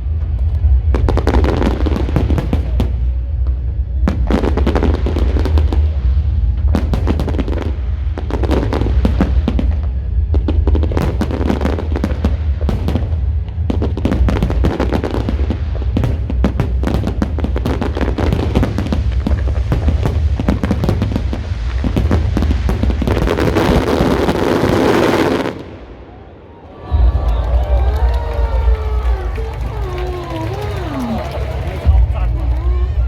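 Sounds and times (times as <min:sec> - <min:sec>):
steady low rumble: 0:00.0 - 0:25.0, 0:25.6 - 0:33.0
loud continuous sizzle: 0:00.0 - 0:25.4
fireworks crackling and banging: 0:00.0 - 0:25.9, 0:27.0 - 0:33.0.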